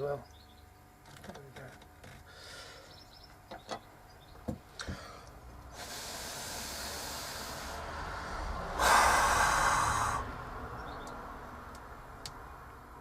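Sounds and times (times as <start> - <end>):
breath blowing: 4.8 - 10.4.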